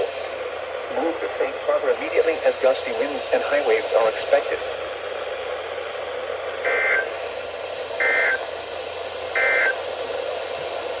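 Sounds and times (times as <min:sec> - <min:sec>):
steady radio hiss: 0:00.0 - 0:11.0
buzzy data tone bursts: 0:06.6 - 0:07.1, 0:08.0 - 0:08.4, 0:09.4 - 0:09.8.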